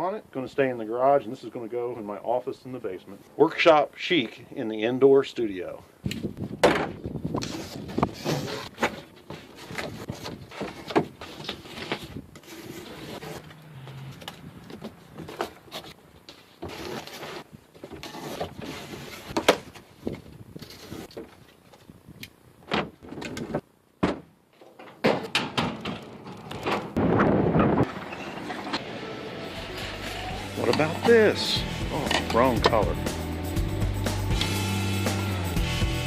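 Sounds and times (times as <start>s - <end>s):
metal drawers sliding: 27.8s - 28.9s.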